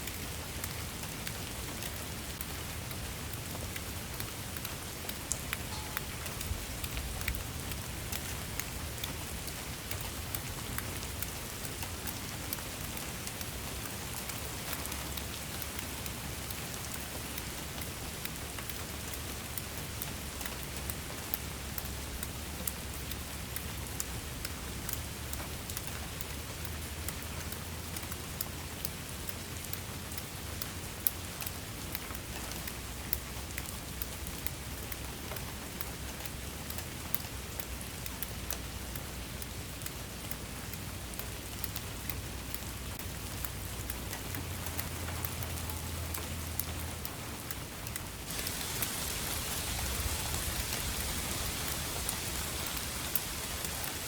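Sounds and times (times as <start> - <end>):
raindrops ticking on a surface: 0.0 - 54.0
steady rain hiss: 0.0 - 54.0.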